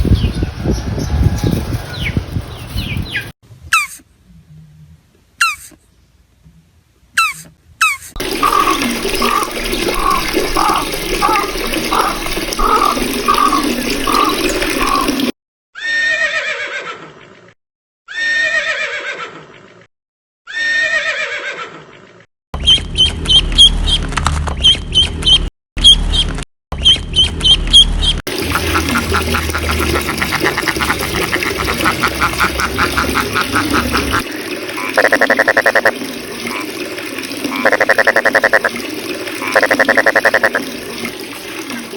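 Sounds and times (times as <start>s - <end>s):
repeated animal call: 5.4s - 5.8s
clicking croaking pulses: 7.3s - 15.3s, 28.5s - 36.7s, 37.4s - 38.8s, 39.4s - 40.7s
falling animal cries: 15.8s - 17.1s, 18.1s - 19.5s, 20.5s - 21.9s.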